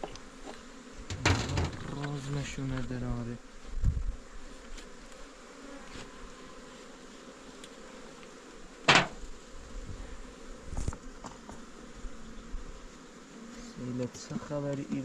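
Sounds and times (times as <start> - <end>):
honeybees buzzing: 0.0 - 15.0
dull thump: 1.1 - 2.0, 8.9 - 9.2
sharp knock: 8.9 - 9.2.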